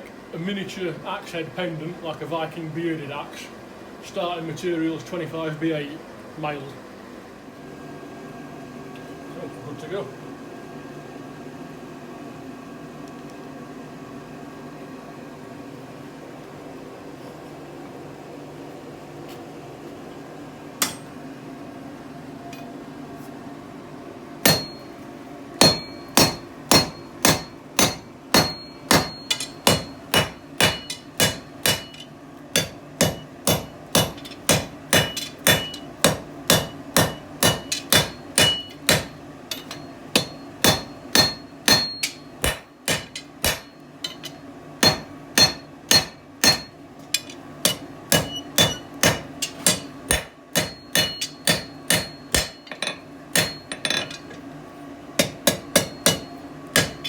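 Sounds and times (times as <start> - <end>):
steady low hum: 13.7 - 57.0
hammer striking steel on anvil: 20.8 - 21.2, 24.4 - 25.0, 25.6 - 54.4, 55.2 - 57.0.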